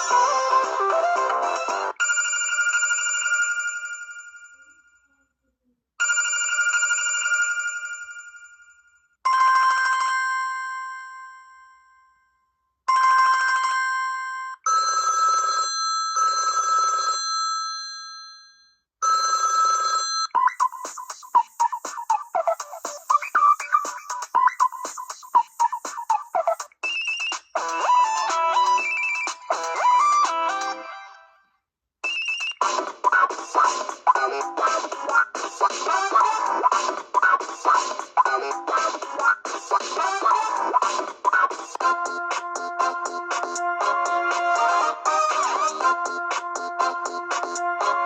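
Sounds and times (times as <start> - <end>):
rhythmic musical ringtone: 0.0 - 4.9, 19.0 - 31.2, 32.0 - 48.0
musical ringtone: 0.0 - 5.0, 19.0 - 31.4, 32.0 - 48.0
bell-like electronic rings: 2.0 - 5.1.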